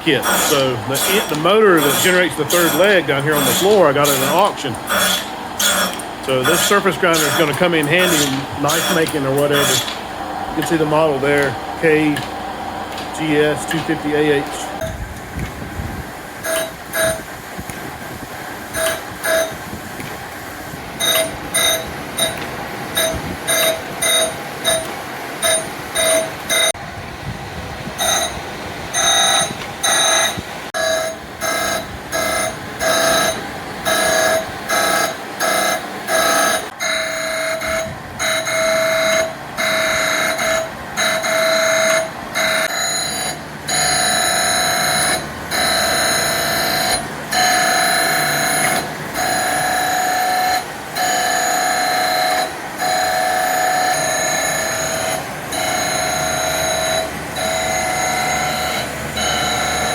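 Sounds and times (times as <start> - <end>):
pulsing electronic tones: 29.0 - 59.9.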